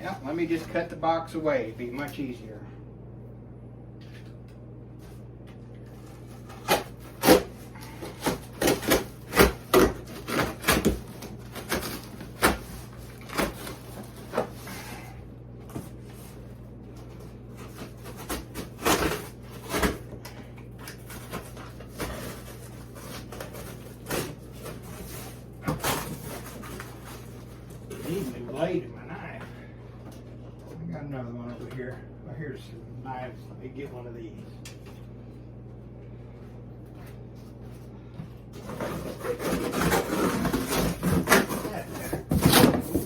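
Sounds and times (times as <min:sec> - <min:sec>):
cardboard scraping and ripping: 0:05.9 - 0:15.0, 0:17.5 - 0:20.1, 0:20.8 - 0:28.8, 0:38.6 - 0:43.0
knife cutting cardboard: 0:06.2 - 0:15.0, 0:17.6 - 0:20.0, 0:38.6 - 0:43.0.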